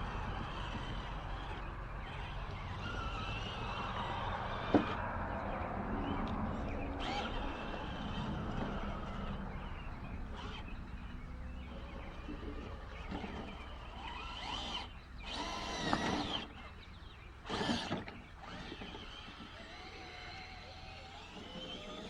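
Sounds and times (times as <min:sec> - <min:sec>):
small electric motor whirring: 0:00.0 - 0:10.8, 0:11.6 - 0:22.0
steady low hum: 0:00.0 - 0:22.0.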